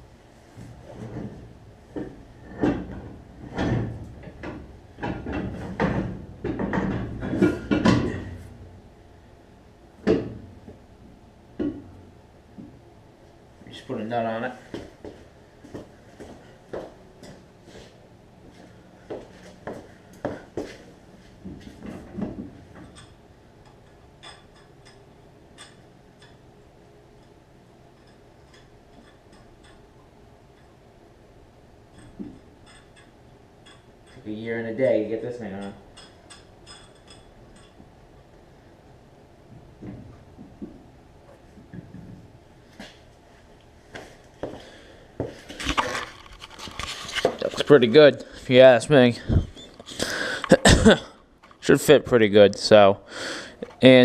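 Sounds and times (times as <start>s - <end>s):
wheel knocks and clunks on hub: 1.1s - 8.4s
metal knocks and clinks: 35.6s - 37.8s.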